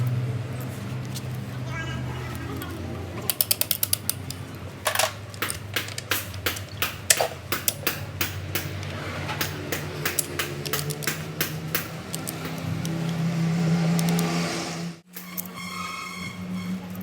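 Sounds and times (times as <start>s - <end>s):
hand tools tapping on metal: 2.4s - 14.3s.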